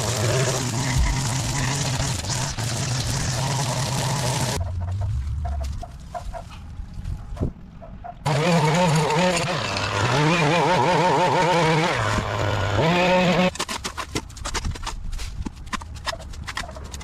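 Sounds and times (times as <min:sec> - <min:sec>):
engine running: 0:00.0 - 0:06.9.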